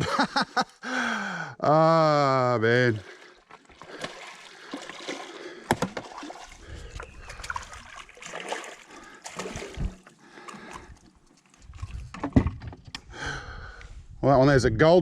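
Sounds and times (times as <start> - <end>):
water splashing beside boat: 2.9 - 12.3.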